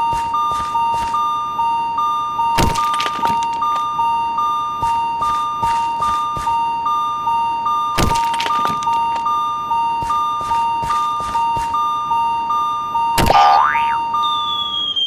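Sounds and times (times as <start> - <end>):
sharp hit: 13.2 - 14.1.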